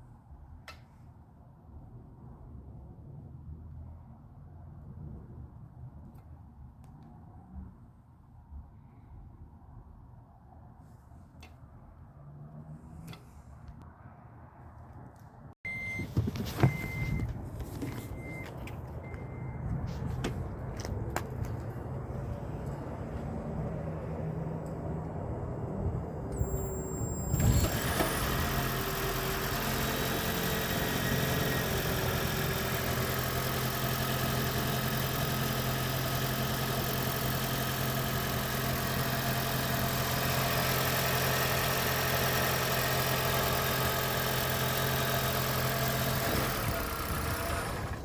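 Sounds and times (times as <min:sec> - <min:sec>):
car engine running: 0:15.7 - 0:48.0.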